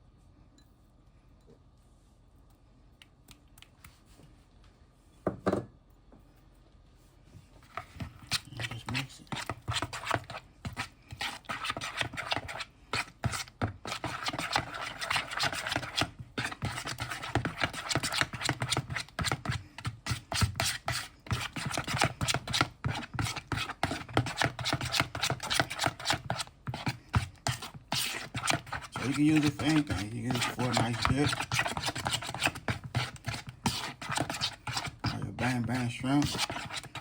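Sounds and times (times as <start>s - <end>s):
utensil scraping a bowl: 7.6s - 37.0s.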